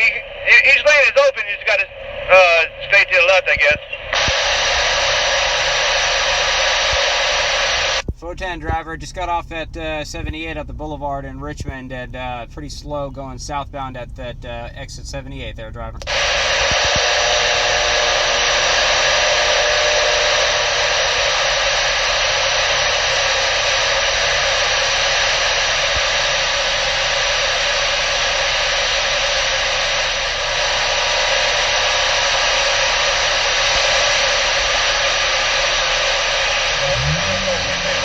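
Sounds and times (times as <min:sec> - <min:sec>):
radio static hiss: 0:00.0 - 0:08.0, 0:16.0 - 0:38.0.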